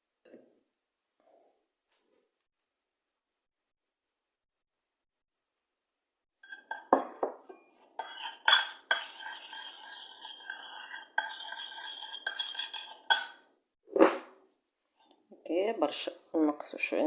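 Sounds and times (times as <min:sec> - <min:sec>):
utensil scraping a dish: 0:06.4 - 0:07.0, 0:07.6 - 0:13.5.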